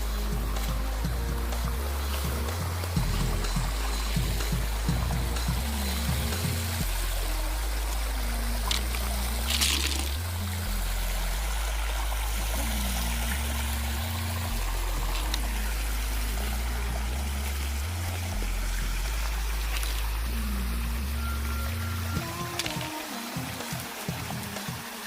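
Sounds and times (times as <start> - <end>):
background music with bass line: 0.0 - 25.0
water splash: 0.0 - 25.0
water trickling: 0.0 - 25.0.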